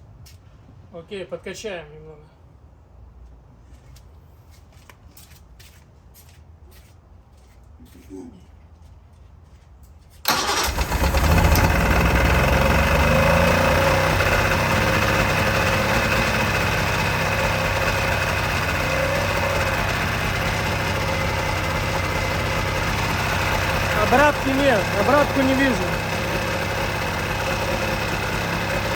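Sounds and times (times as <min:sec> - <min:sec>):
outboard motor idling: 0:10.3 - 0:28.9.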